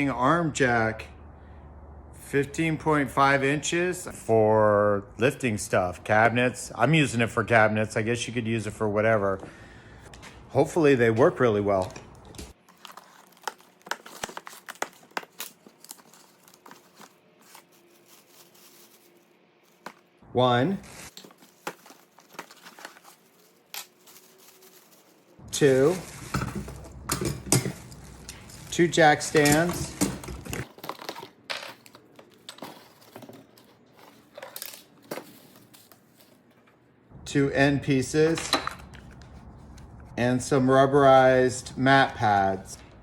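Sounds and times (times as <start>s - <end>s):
packaging crinkling and rustling: 11.8s - 20.2s, 20.8s - 36.5s
metal parts clinking: 21.9s - 33.3s, 38.3s - 39.2s.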